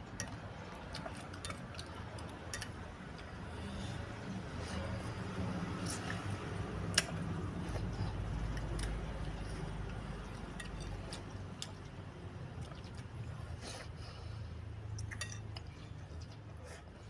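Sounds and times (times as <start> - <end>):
chewing noise: 4.6 - 14.0.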